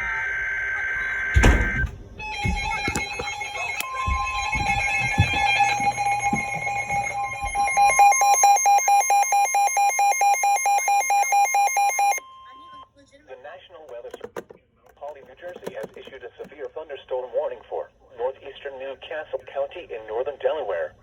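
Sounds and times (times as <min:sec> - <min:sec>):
electronic alarm tones: 0:00.0 - 0:12.9
door shutting with a thump: 0:01.4 - 0:03.0.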